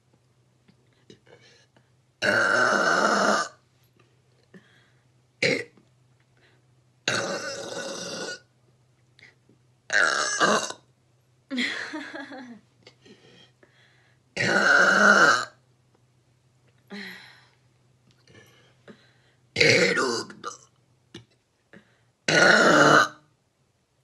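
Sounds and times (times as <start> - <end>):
person burping: 2.2 - 3.6, 5.4 - 5.8, 7.1 - 8.5, 9.9 - 10.9, 14.4 - 15.6, 19.6 - 20.7, 22.3 - 23.2.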